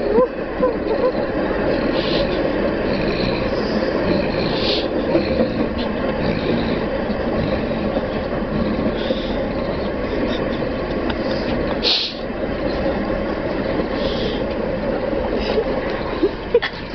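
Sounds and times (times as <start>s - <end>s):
moving train rumble: 0.0s - 16.9s
short hisses: 11.8s - 12.2s.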